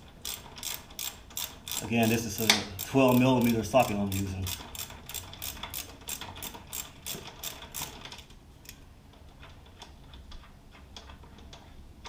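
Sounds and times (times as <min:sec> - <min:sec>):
socket ratchet clicking: 0:00.2 - 0:08.0.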